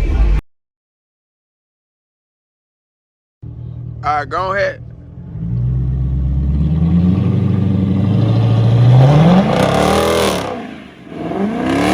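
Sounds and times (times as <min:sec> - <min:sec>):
car engine accelerating: 0:03.4 - 0:11.9.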